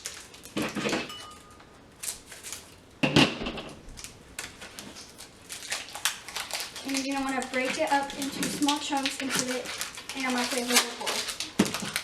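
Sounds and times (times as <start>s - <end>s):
chocolate wrapper crinkling: 0.0s - 0.7s, 3.9s - 12.0s.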